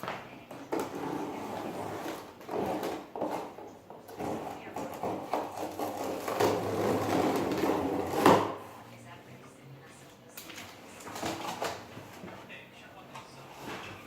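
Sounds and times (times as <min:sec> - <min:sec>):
cardboard packaging scraping and knocking: 0:00.6 - 0:08.6.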